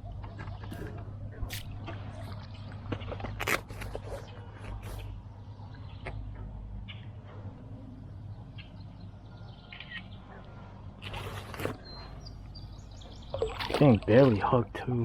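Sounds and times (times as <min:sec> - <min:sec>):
low steady hum: 0:00.0 - 0:15.0
birds calling: 0:04.0 - 0:15.0.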